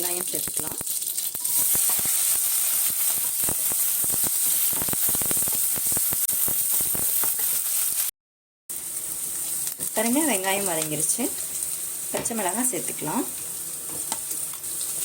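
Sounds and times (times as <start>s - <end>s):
onions sizzling in hot oil: 0.0s - 8.1s, 8.7s - 15.0s
oil crackling and spattering: 0.1s - 8.1s.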